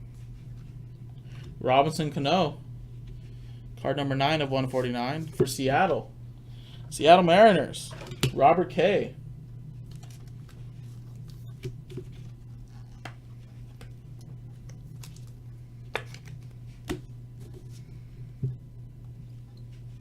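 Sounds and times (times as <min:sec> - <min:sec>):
low hum: 0:00.0 - 0:20.0
cards being flipped: 0:09.9 - 0:12.0, 0:15.9 - 0:17.7.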